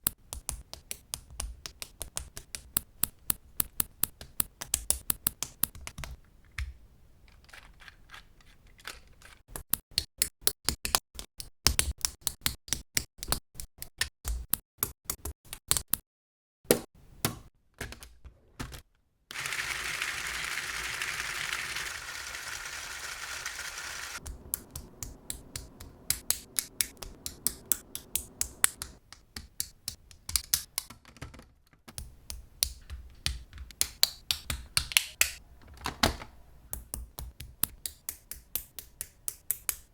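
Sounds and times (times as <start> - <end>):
plastic bricks clicking together: 19.3 - 24.2
steady noise: 19.4 - 29.0.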